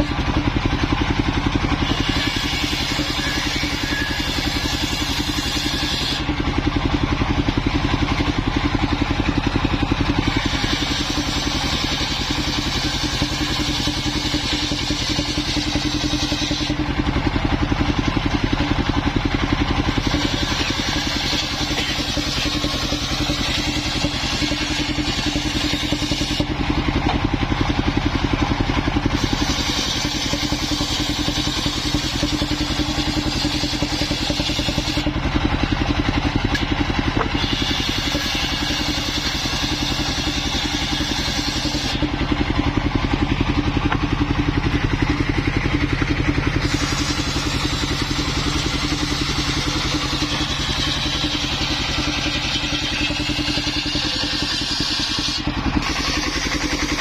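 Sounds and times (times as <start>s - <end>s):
engine running steadily: 0.0s - 57.0s
saw blade cutting wood hiss: 1.7s - 6.3s, 10.1s - 16.9s, 19.8s - 26.5s, 29.0s - 35.1s, 37.2s - 42.1s, 46.6s - 57.0s.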